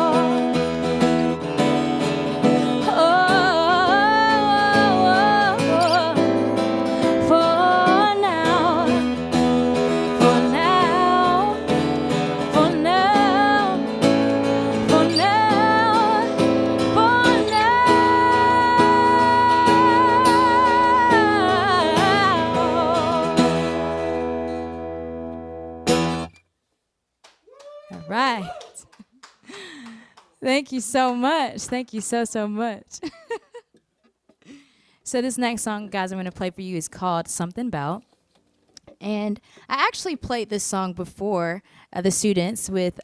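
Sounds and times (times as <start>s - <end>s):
woman singing: 0.0s - 24.2s
acoustic guitar: 0.0s - 26.5s
woman singing high held note: 14.9s - 16.4s.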